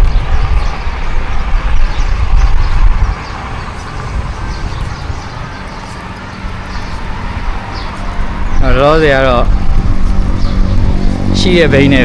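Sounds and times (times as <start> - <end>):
outdoor road noise: 0.0 - 12.0
wind rumbling on microphone: 0.0 - 12.0.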